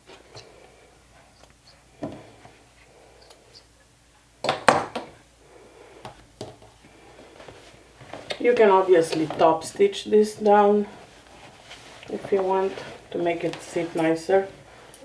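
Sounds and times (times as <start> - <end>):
tools knocking on worktable: 4.4 - 5.1.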